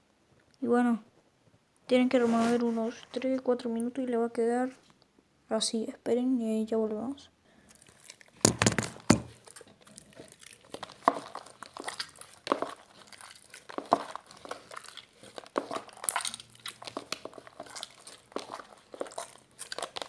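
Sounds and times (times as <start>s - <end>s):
slime squelching when stirred: 7.8s - 20.0s.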